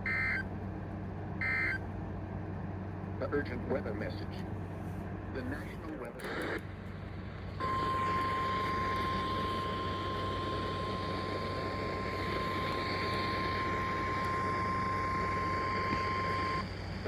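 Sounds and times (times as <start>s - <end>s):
steady alarm beep: 0.0s - 0.4s, 1.4s - 1.8s, 7.6s - 16.8s
radio static: 5.4s - 6.6s, 7.6s - 17.0s.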